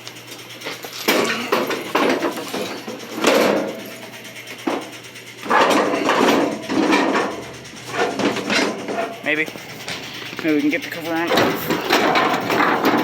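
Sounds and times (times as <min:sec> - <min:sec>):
clattering and scraping knocks: 0:01.0 - 0:13.0.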